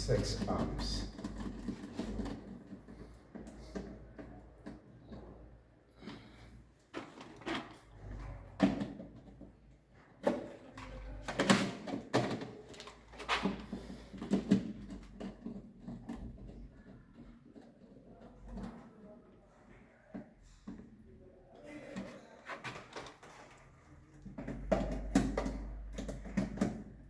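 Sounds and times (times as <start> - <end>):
plastic clicks and knocks: 24.2 - 27.0.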